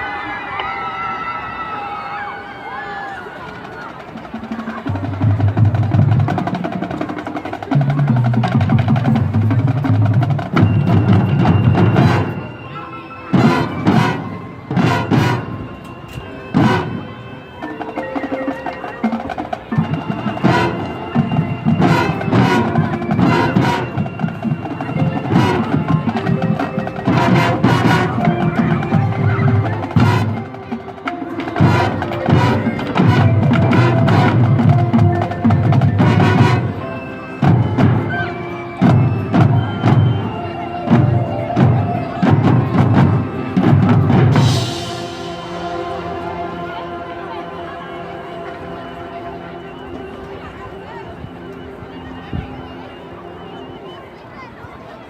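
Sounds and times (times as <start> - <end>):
winds and brass holding notes: 0.0 - 55.0
drum and percussion strikes: 4.0 - 12.6, 13.3 - 47.0.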